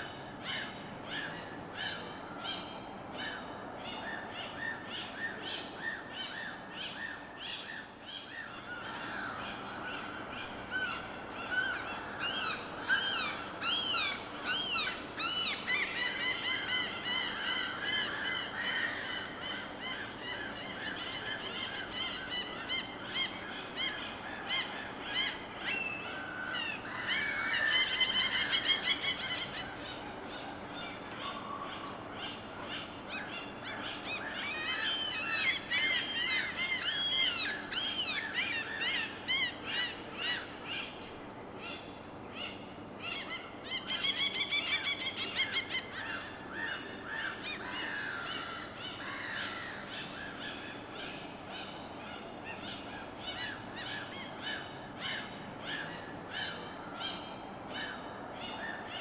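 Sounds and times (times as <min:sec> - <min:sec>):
birds chirping and trilling: 0:04.4 - 0:41.0.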